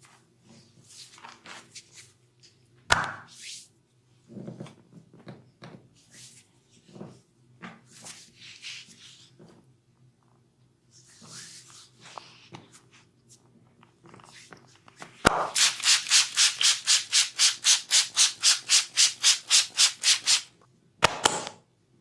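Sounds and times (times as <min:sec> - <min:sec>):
hands rubbing skin: 0:15.4 - 0:20.5.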